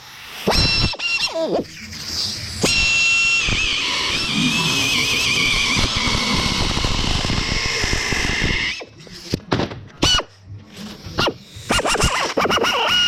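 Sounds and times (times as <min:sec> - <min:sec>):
rotary power tool grinding metal: 0:02.6 - 0:08.9.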